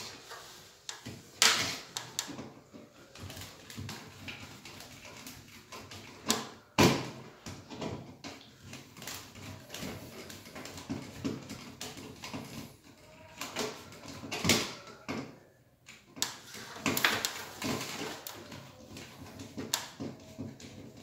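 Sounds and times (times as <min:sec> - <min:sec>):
tools clicking and knocking: 0:07.6 - 0:21.0.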